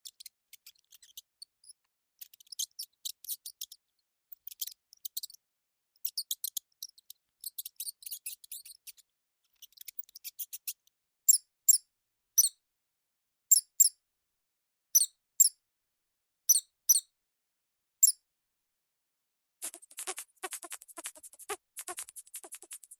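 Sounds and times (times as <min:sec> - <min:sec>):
mouse squeaking: 0:00.0 - 0:05.4, 0:06.0 - 0:12.6, 0:13.5 - 0:14.0, 0:15.0 - 0:15.6, 0:16.5 - 0:17.1, 0:18.0 - 0:18.2, 0:19.6 - 0:22.9.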